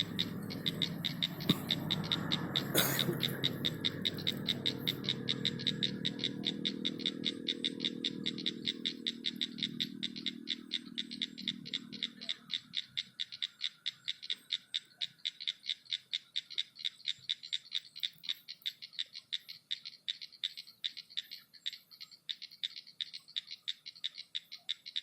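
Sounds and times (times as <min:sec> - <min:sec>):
low rumbling noise: 0:00.0 - 0:12.1
frog calling with rapid clicks: 0:00.0 - 0:25.0.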